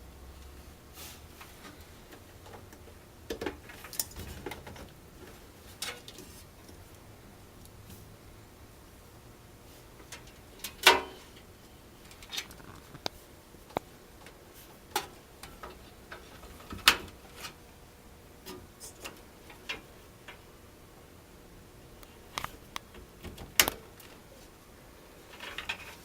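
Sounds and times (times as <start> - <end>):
cables and connectors clicking: 12.0 - 17.6, 22.0 - 24.2.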